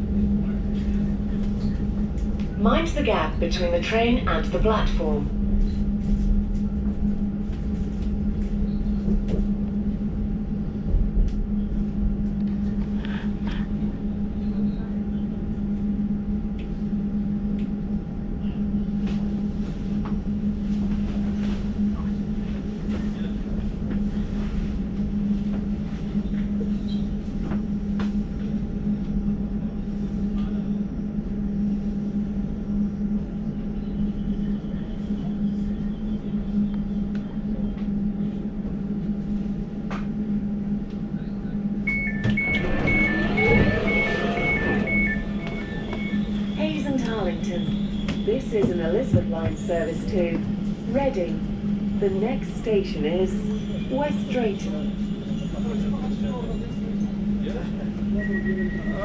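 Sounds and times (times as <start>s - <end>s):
train equipment humming: 0.0s - 59.0s
door-closing warning beeps: 41.9s - 49.7s, 58.2s - 59.0s.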